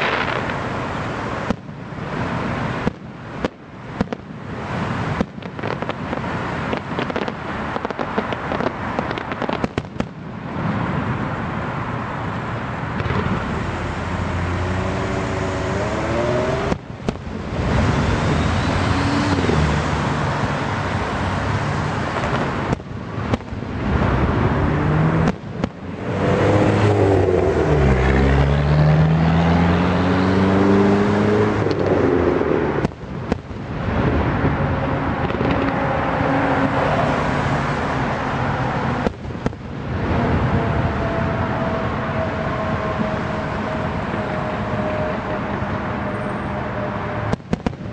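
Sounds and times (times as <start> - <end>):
fireworks banging and crackling: 0.0 - 11.8, 12.4 - 13.8, 15.4 - 26.2, 31.6 - 36.8, 38.0 - 41.0, 41.8 - 47.9.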